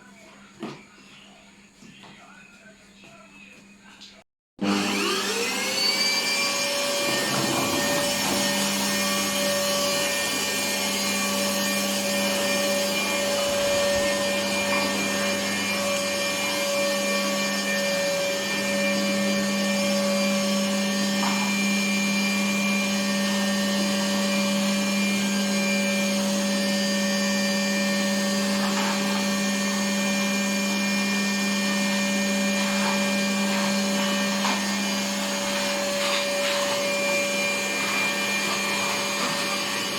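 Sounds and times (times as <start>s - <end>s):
vacuum cleaner running: 4.6s - 39.9s.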